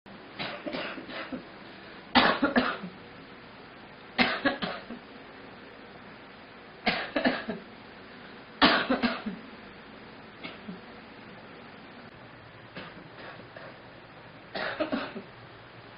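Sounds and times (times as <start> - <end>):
girl coughing: 0.4 - 1.4, 2.2 - 2.9, 4.2 - 4.9, 6.9 - 7.6, 8.6 - 9.4, 14.6 - 15.3.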